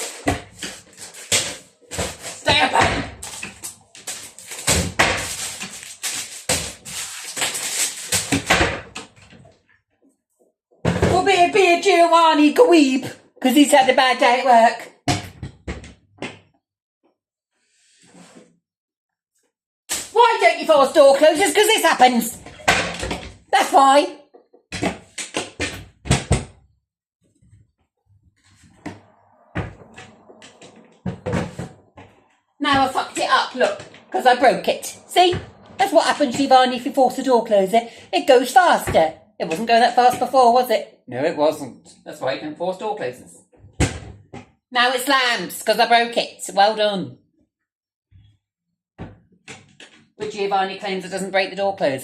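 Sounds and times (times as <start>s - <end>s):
cupboard door banging and knocking: 24.7s - 26.6s.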